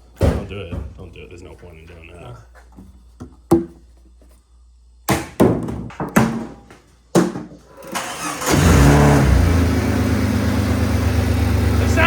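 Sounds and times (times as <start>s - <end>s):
car engine cranking and running: 7.8s - 12.0s.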